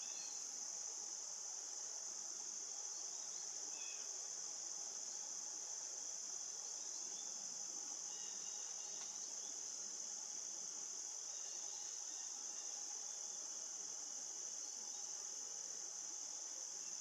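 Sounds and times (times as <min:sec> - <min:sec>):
high-pitched insect chorus: 0:00.0 - 0:17.0.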